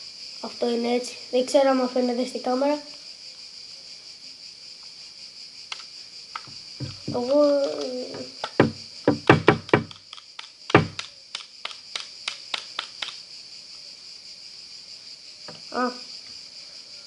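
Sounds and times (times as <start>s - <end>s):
plastic device clicks and knocks: 6.4s - 13.2s.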